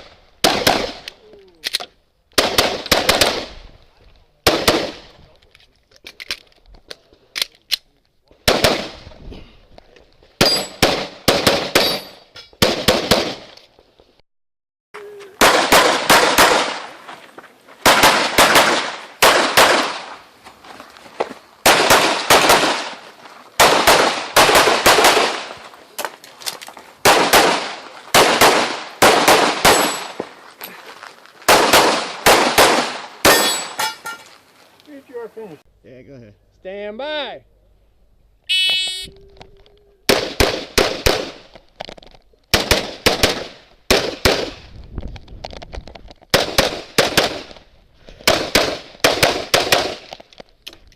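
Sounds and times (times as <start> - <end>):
pistol shots: 0.4 - 1.1, 2.4 - 3.5, 4.4 - 5.1, 8.4 - 9.0, 10.4 - 13.5, 15.4 - 17.0, 17.8 - 20.2, 21.6 - 23.0, 23.6 - 25.6, 27.0 - 30.2, 31.5 - 34.0, 40.1 - 41.5, 42.5 - 44.6, 46.3 - 47.6, 48.2 - 50.2.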